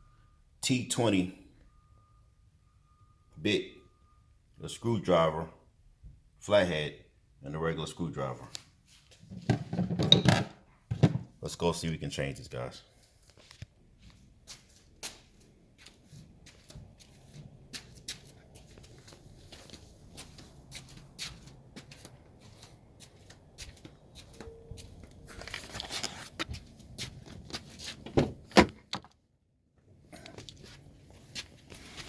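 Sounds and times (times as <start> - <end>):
handling clicks and knocks: 9.4 - 11.3.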